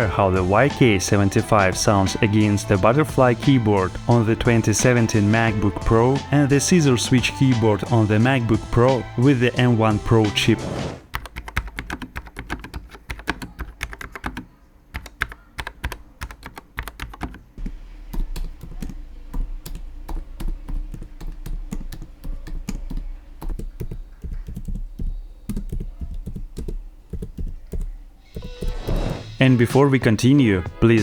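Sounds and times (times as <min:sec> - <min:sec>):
typing on keyboards: 0:11.1 - 0:29.2.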